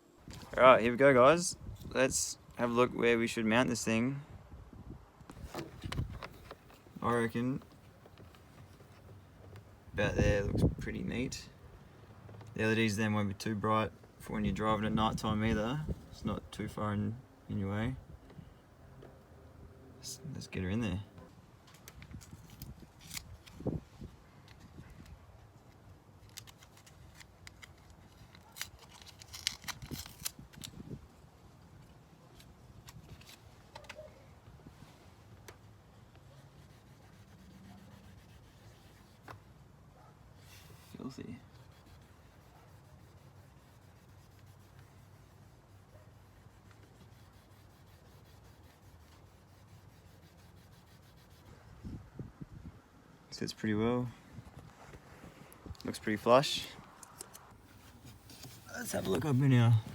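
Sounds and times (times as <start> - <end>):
hands rubbing on plastic trim: 35.5 - 39.5, 40.4 - 51.7, 57.3 - 59.9.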